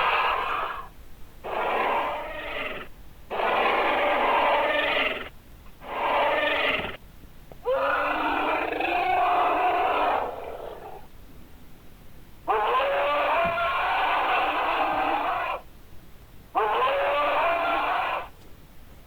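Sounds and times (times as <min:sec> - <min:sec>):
creature growling roars: 0:00.0 - 0:07.0, 0:07.7 - 0:11.1, 0:12.5 - 0:15.6, 0:16.6 - 0:18.3.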